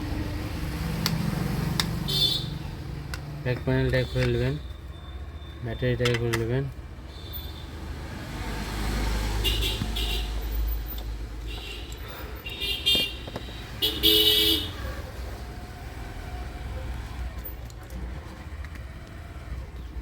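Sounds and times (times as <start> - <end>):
low traffic rumble: 0.0 - 20.0
vehicle horns tooting: 2.0 - 2.6, 9.3 - 10.7, 11.5 - 14.9.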